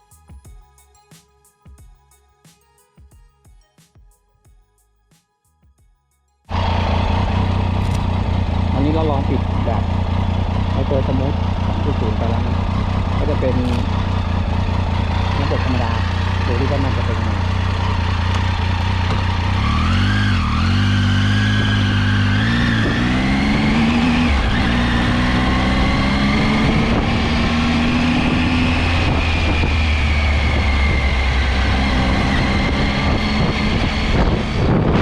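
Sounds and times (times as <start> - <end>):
motorcycle engine running: 6.5 - 35.0.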